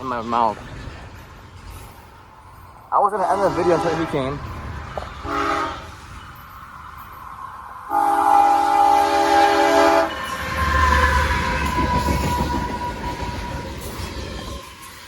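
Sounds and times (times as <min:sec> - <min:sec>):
train rumble: 0:00.0 - 0:15.0
locomotive air horn blast: 0:05.2 - 0:05.9, 0:07.9 - 0:10.1.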